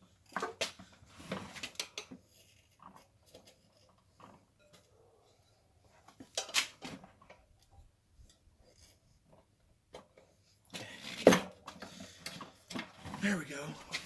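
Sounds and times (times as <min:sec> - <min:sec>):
tire irons clinking and scraping: 0:10.0 - 0:14.0.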